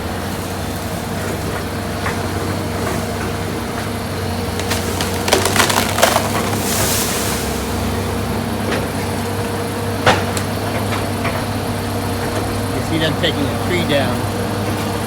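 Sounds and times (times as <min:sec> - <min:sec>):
excavator engine running: 0:00.0 - 0:15.0
wood cracking and splintering: 0:02.2 - 0:08.3.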